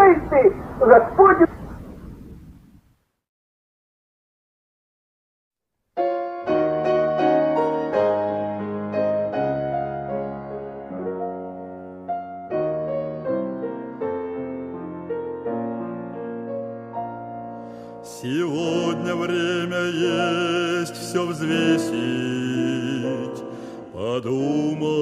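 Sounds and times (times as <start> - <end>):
piano playing slow chords: 6.0 - 25.0.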